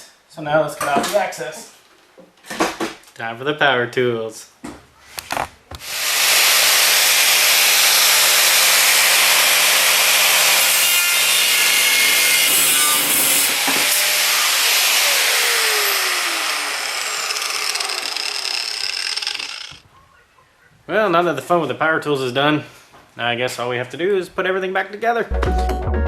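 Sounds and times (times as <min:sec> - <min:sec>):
power tool cutting metal: 0:05.8 - 0:19.8
motor humming: 0:13.5 - 0:19.8.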